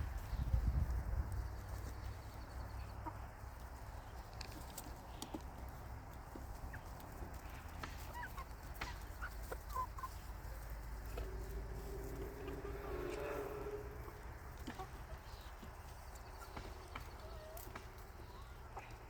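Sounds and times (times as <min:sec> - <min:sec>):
chickens clucking softly: 0:00.1 - 0:19.0
low steady rumble: 0:10.2 - 0:14.8.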